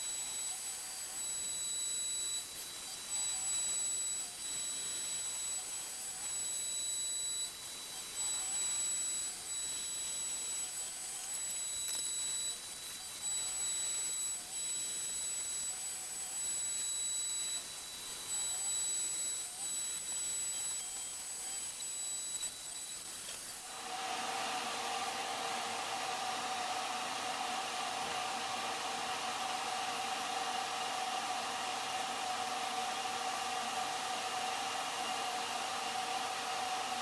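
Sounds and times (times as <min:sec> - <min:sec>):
router spindle cutting acrylic: 0:00.1 - 0:23.9.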